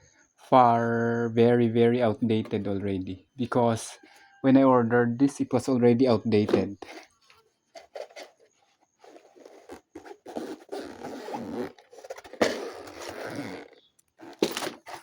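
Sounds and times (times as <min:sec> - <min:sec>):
container scraping and rustling: 0:06.4 - 0:15.0.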